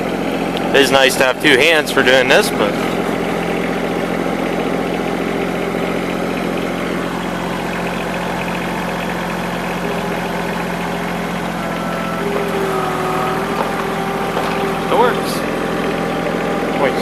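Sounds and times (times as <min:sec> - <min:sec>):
tractor engine running: 0:00.0 - 0:17.0
thin high whine: 0:06.6 - 0:17.0.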